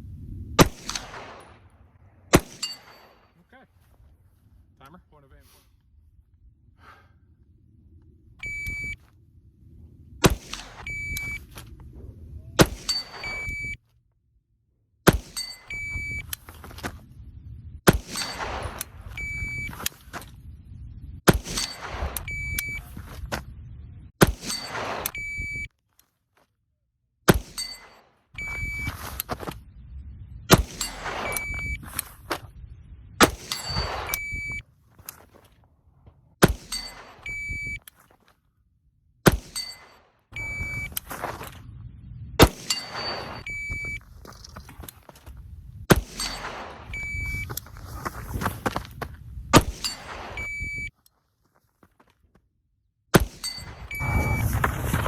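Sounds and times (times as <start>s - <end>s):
gunshot: 0.6s - 1.7s, 2.3s - 3.2s, 10.2s - 11.1s, 12.6s - 13.6s, 15.1s - 15.4s, 17.9s - 18.9s, 21.3s - 22.9s, 24.2s - 25.3s, 27.3s - 28.0s, 30.5s - 31.9s, 33.2s - 34.6s, 36.4s - 37.4s, 39.2s - 39.9s, 42.4s - 43.5s, 45.8s - 47.5s, 49.5s - 50.6s, 53.1s - 55.0s
shot timer beep: 8.4s - 9.0s, 10.7s - 11.4s, 12.9s - 13.8s, 15.4s - 16.3s, 19.2s - 19.8s, 22.2s - 22.8s, 25.1s - 25.7s, 28.4s - 28.9s, 31.2s - 31.8s, 33.5s - 34.6s, 36.7s - 37.8s, 40.4s - 41.0s, 42.7s - 44.0s, 46.2s - 47.6s, 49.8s - 50.9s, 53.6s - 54.5s
rustling and movement: 39.4s - 52.4s, 53.2s - 55.0s.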